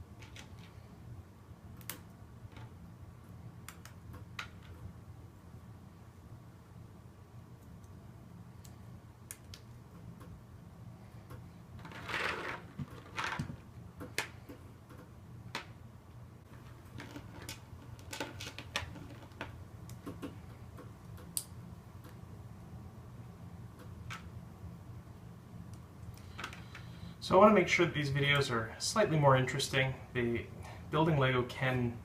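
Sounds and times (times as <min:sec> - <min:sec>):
plastic parts rattling: 0:11.8 - 0:13.6, 0:16.6 - 0:19.5.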